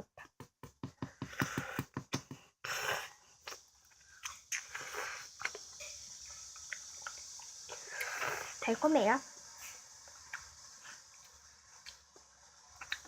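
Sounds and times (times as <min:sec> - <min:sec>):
chewing: 0:12.8 - 0:13.0.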